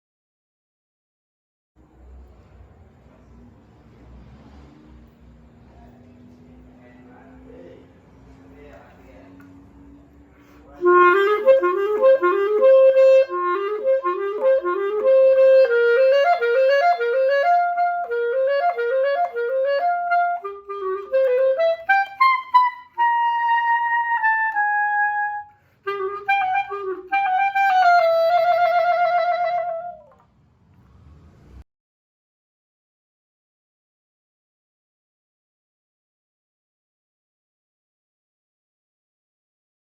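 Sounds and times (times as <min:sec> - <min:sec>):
solo clarinet: 0:10.7 - 0:30.3.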